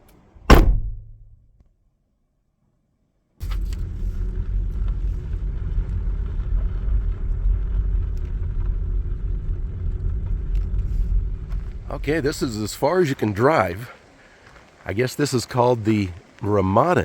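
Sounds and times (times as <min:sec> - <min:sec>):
car engine and tyre rumble: 0:03.4 - 0:17.0.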